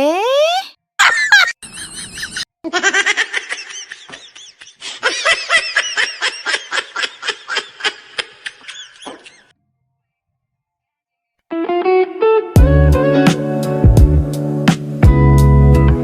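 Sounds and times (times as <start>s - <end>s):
high-pitched laughter: 1.0s - 9.5s.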